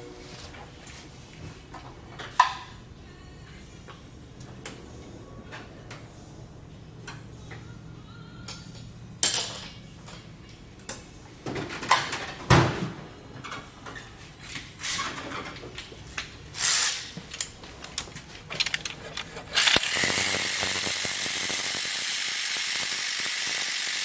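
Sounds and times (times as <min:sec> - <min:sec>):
hand tools clicking and scraping: 0:13.4 - 0:24.0.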